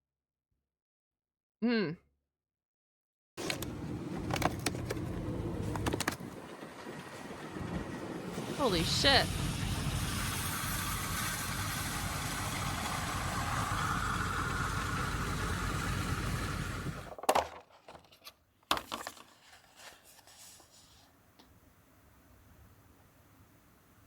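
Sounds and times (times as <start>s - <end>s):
steady rumble with hiss: 7.4s - 17.1s.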